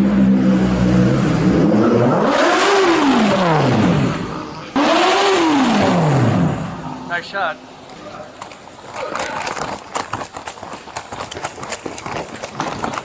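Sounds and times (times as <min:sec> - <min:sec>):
motorcycle engine revving: 0:00.0 - 0:08.3.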